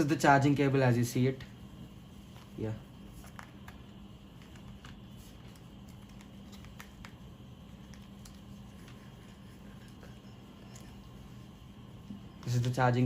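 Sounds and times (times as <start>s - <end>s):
steady low hum: 0.0s - 13.0s
cable and packaging rustling: 2.3s - 10.0s.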